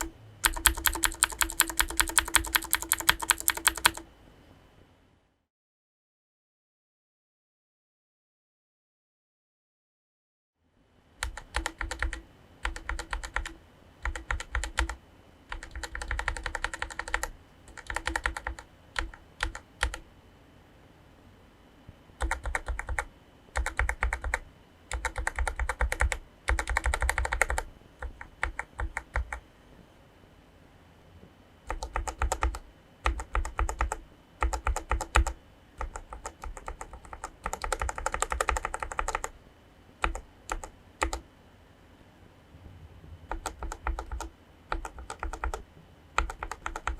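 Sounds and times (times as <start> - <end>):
mechanical keyboard keystrokes: 0.0 - 4.0, 11.2 - 20.0, 22.2 - 29.4, 31.7 - 39.3, 40.0 - 41.2, 43.3 - 45.6, 46.2 - 46.9.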